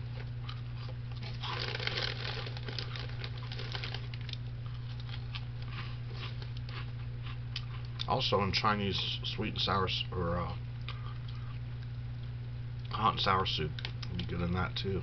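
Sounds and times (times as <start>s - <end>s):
steady low hum: 0.0s - 15.0s
plastic snack bag crinkling: 0.2s - 6.8s.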